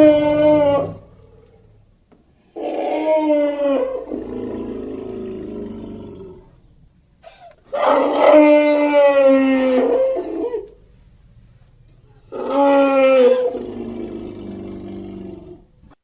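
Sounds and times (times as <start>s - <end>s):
elephant trumpeting: 0.0s - 1.7s, 2.6s - 6.5s, 7.2s - 10.8s, 12.1s - 15.6s.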